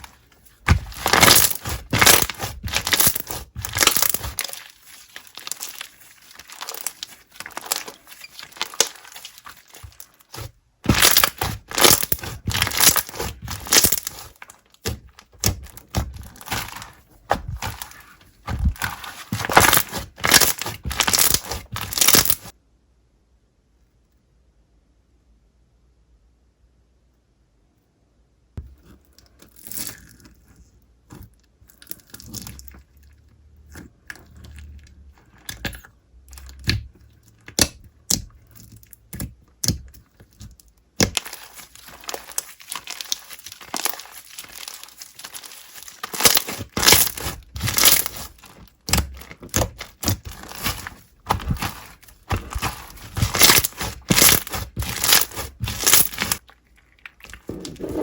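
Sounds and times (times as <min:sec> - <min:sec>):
slime crackling and popping: 0:00.0 - 0:22.5, 0:35.5 - 0:58.0.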